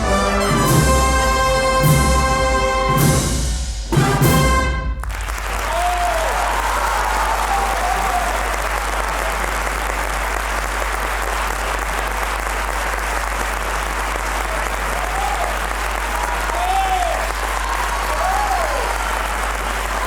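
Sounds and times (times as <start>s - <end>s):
brass band chord: 0.0s - 5.1s
audience applause: 4.1s - 20.0s
short calls from audience: 14.1s - 20.0s.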